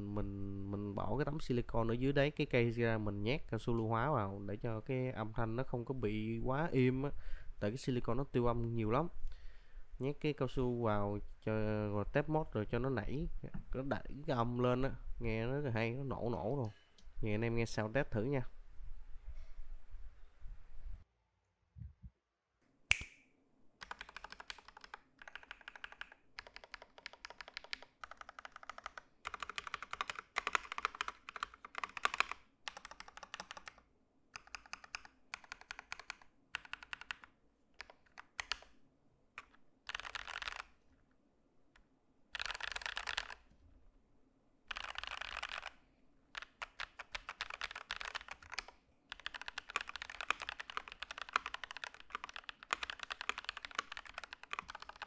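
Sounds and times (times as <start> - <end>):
mechanical keyboard keystrokes: 23.8 - 33.8, 34.4 - 38.7, 39.4 - 40.7, 42.4 - 43.4, 44.7 - 45.7, 46.4 - 55.0.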